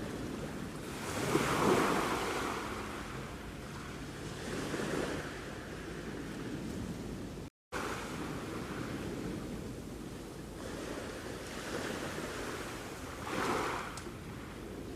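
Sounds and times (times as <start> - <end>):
sea waves breaking on shore: 0.0 - 14.9
wind on microphone: 0.0 - 14.9.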